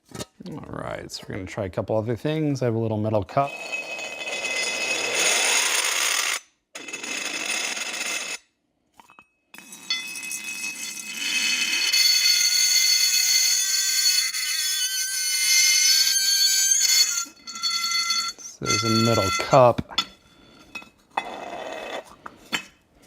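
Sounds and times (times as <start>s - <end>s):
metal cup ringing on dry ice: 9.0s - 21.3s.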